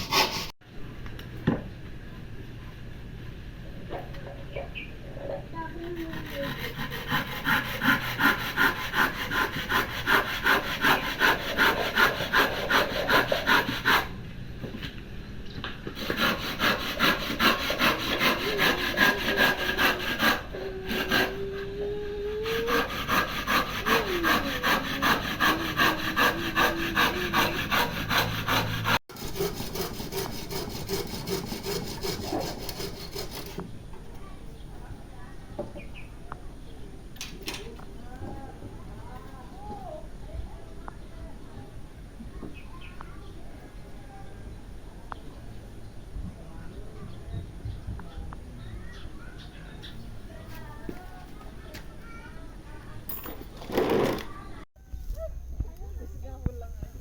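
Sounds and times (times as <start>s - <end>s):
rhythmic scraping strokes: 0.0s - 0.6s, 16.0s - 33.6s.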